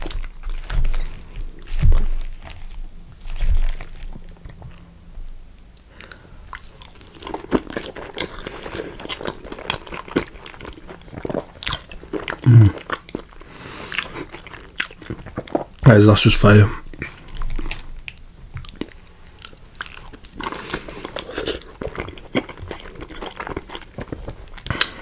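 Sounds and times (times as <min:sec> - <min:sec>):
chewing with wet mouth sounds: 0:00.0 - 0:25.0.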